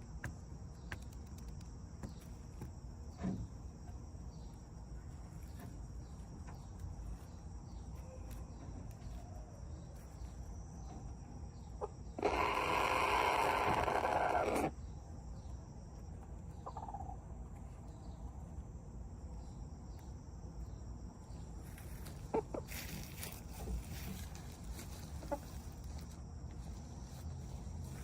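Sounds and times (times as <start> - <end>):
chickens clucking softly: 11.6 - 14.7, 22.1 - 23.8, 24.9 - 26.0.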